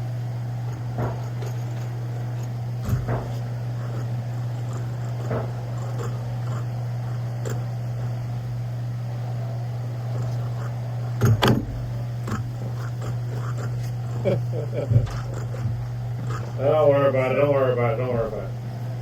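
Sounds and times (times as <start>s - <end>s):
sharp knocks: 2.8s - 3.5s, 11.2s - 12.5s.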